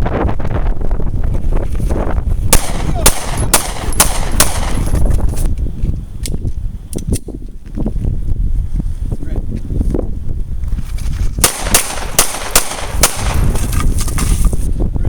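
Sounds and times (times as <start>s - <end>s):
wind rumble on microphone: 0.0s - 15.0s
pistol shots: 2.5s - 4.9s, 11.4s - 13.7s.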